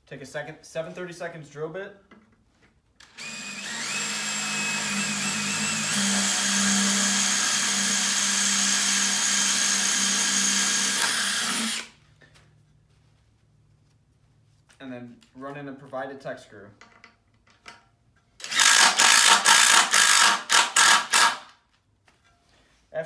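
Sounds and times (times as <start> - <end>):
power drill drilling: 3.0 - 11.9, 18.4 - 21.5.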